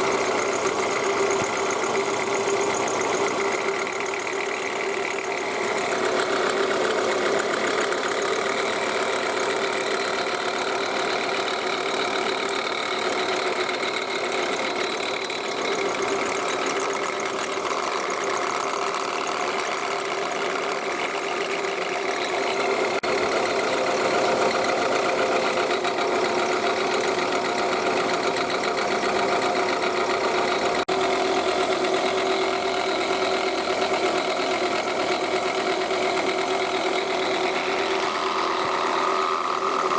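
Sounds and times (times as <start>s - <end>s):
car engine idling: 0.0s - 39.9s
whirring alternator bearing drone: 0.0s - 39.9s.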